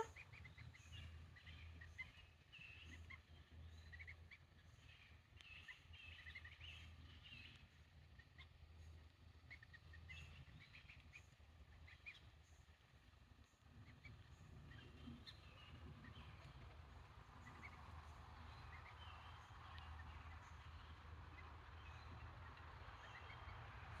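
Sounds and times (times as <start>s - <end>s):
goslings peeping: 0.0s - 0.3s
low steady hum: 0.0s - 24.0s.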